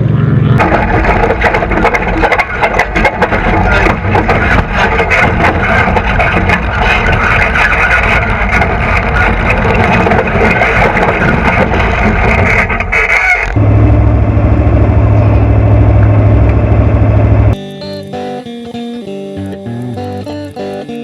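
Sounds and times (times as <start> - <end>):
loud racing engine: 0.0 - 1.9, 13.5 - 17.6
dense rattling and clatter: 0.6 - 13.6.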